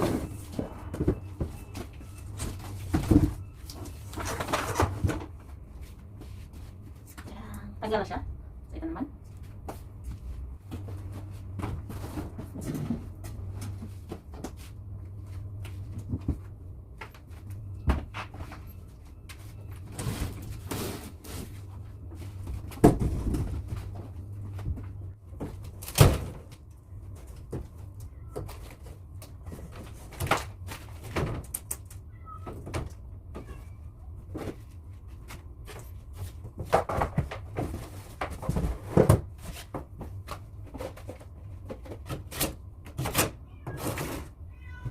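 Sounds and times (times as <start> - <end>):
wall partition knocks and clatter: 36.5 - 42.3.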